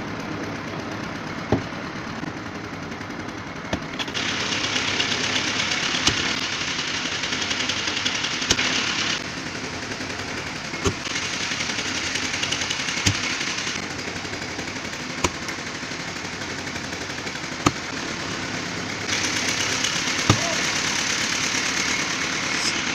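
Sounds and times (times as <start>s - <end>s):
piling machine engine running: 0.0s - 22.9s
pile-driving hammer striking: 15.2s - 15.5s, 20.1s - 20.7s.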